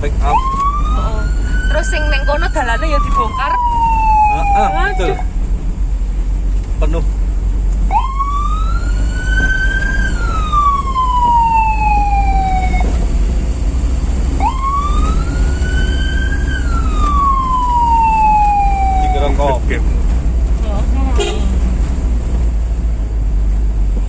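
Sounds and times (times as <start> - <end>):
low vehicle rumble: 0.0 - 24.0
vehicle siren wailing: 0.1 - 5.4, 7.9 - 13.2, 14.3 - 19.7.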